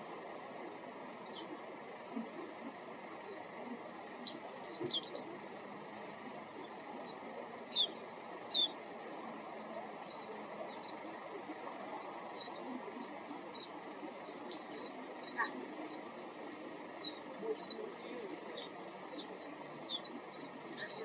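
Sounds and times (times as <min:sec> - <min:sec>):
low background noise: 0:00.0 - 0:21.0.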